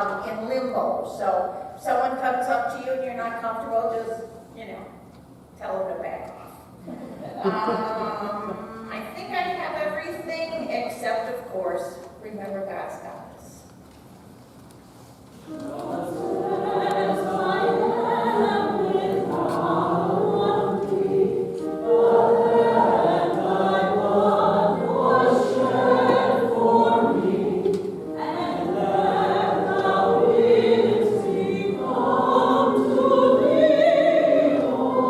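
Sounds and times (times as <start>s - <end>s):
choir singing: 15.5s - 35.0s.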